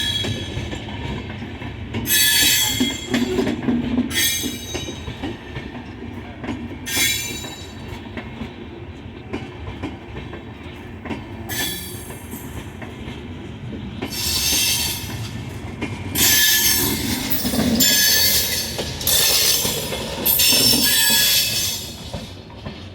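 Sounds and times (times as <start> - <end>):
train wheels squealing: 0.0 - 1.2, 2.0 - 6.0, 6.7 - 8.0, 11.4 - 12.6, 14.0 - 15.5, 16.2 - 22.9
rumble of rolling coaches: 0.0 - 22.9.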